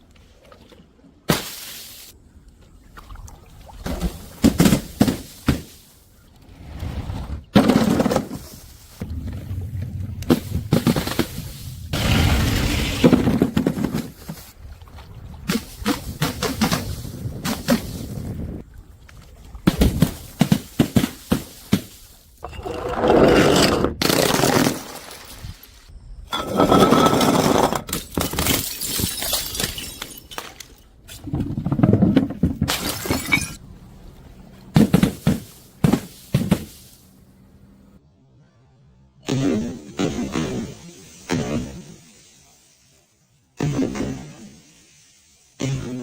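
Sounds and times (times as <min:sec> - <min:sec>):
glass bottles smashing: 0:22.4 - 0:30.8, 0:32.7 - 0:33.6
glass shards clinking and skittering: 0:24.9 - 0:30.8, 0:32.8 - 0:33.6.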